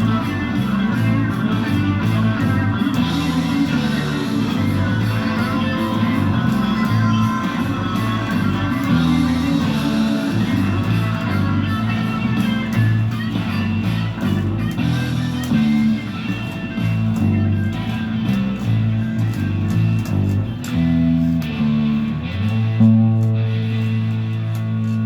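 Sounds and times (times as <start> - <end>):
bass line: 0.0 - 25.0
electric guitar riff: 0.0 - 25.0.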